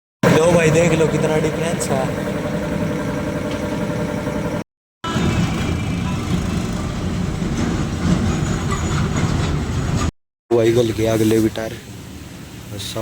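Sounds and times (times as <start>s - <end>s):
tractor engine idling: 0.2s - 8.6s.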